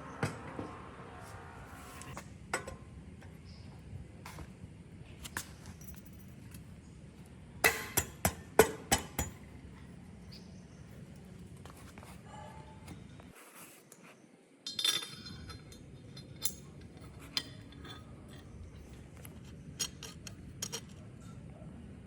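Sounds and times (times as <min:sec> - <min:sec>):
metal parts clinking: 0:14.7 - 0:21.0.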